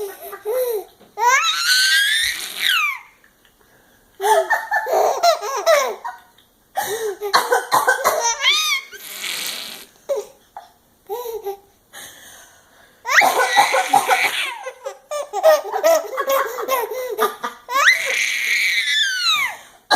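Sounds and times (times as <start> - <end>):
baby laughing hysterically: 4.2 - 6.3, 6.9 - 9.1, 13.1 - 19.5
woman fake coughing: 13.2 - 14.6.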